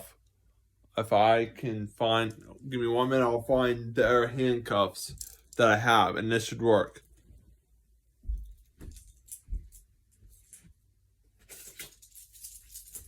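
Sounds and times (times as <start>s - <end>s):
soft handling knocks and thumps: 8.2s - 10.8s
rustling: 11.4s - 13.0s.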